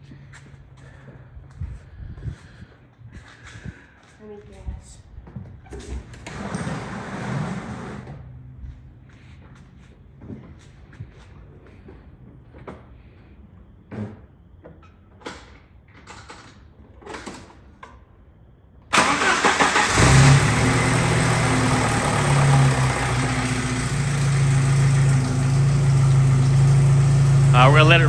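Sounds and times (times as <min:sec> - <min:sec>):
engine cranking: 0:18.9 - 0:28.0
car engine idling: 0:19.0 - 0:28.0.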